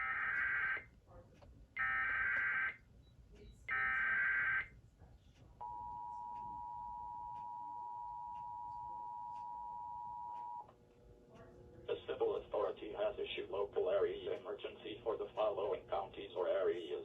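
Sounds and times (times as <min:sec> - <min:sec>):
two-tone attention signal: 0:03.7 - 0:04.7.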